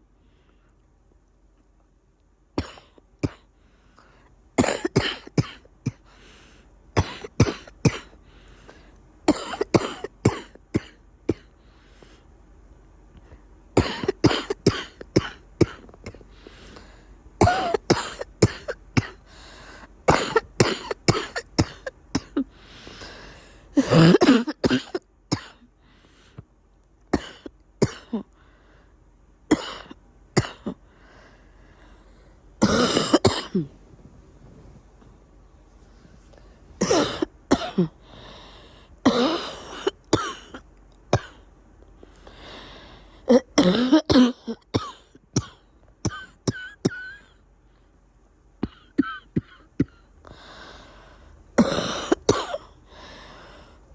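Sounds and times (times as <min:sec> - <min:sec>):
person coughing congested: 0:02.6 - 0:03.5, 0:04.6 - 0:06.0, 0:07.0 - 0:08.2, 0:09.3 - 0:11.5, 0:13.8 - 0:16.2, 0:17.4 - 0:19.2, 0:20.0 - 0:22.6, 0:23.8 - 0:25.7, 0:27.1 - 0:28.4, 0:29.5 - 0:30.8, 0:32.6 - 0:33.8, 0:36.8 - 0:38.0, 0:39.0 - 0:41.4, 0:43.2 - 0:47.4, 0:48.6 - 0:50.1, 0:51.6 - 0:52.8.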